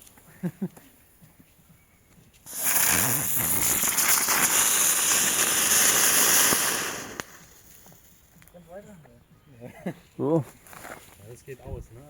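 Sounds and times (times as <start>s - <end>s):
firework hissing: 2.4s - 8.4s
firework crackling: 2.4s - 8.5s.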